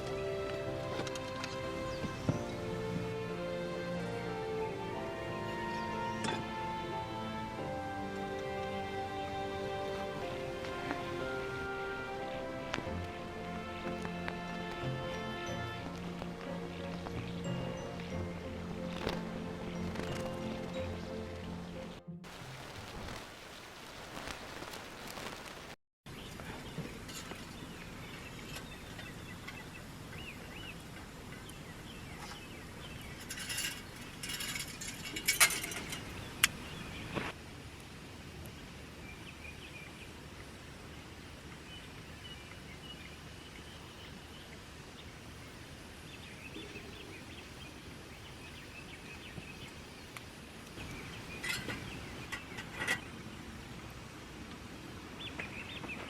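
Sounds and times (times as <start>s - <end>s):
birds calling: 0.0s - 22.1s, 39.0s - 53.8s
outdoor background hiss: 0.0s - 56.0s
handling clicks and rustles: 18.9s - 20.8s, 33.1s - 36.6s, 50.6s - 53.1s.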